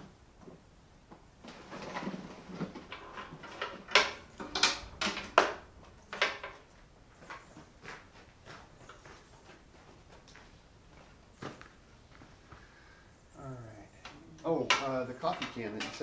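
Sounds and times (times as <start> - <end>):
rustling and shuffling objects: 0.0 - 12.8
sharp knocks and clatters: 1.7 - 10.3, 14.6 - 16.0.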